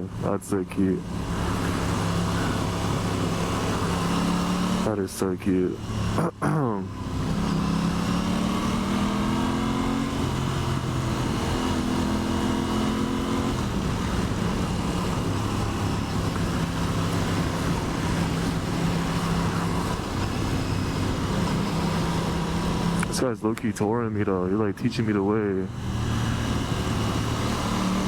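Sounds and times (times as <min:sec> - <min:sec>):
motorcycle engine running: 0:00.0 - 0:23.4, 0:24.2 - 0:28.0
wind rush: 0:13.2 - 0:22.9.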